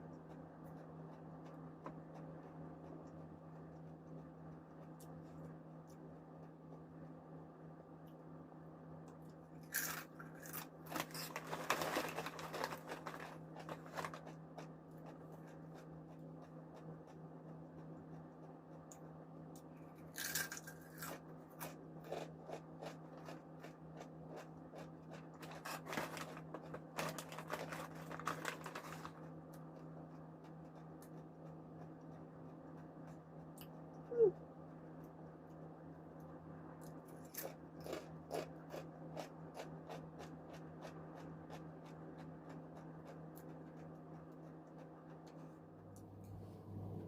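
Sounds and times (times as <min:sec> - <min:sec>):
steady low hum: 0:00.0 - 0:47.0
chips being chewed crunching: 0:09.2 - 0:19.0, 0:19.6 - 0:33.8, 0:36.8 - 0:45.4.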